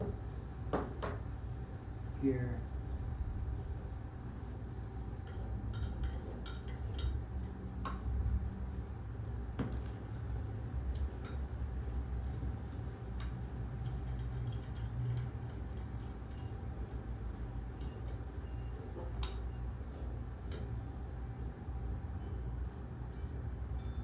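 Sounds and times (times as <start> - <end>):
steady low hum: 0.0 - 24.0
hard parts clinking and tapping: 5.2 - 8.1, 12.2 - 19.5.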